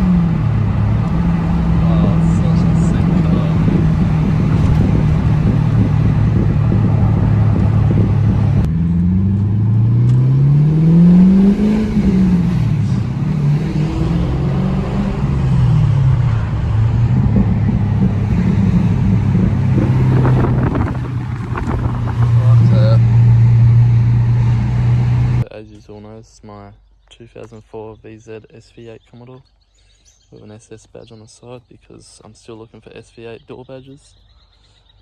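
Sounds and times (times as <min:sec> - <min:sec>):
engine revving: 0:00.0 - 0:25.5.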